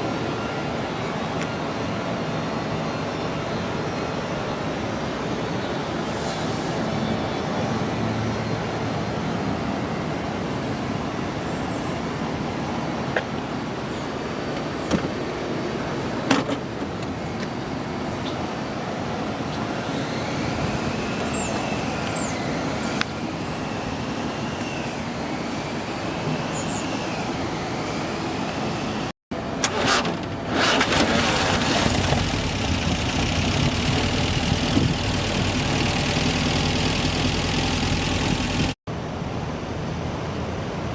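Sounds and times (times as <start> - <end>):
four-cylinder engine running: 29.6 - 38.8
steady running noise: 30.5 - 38.8.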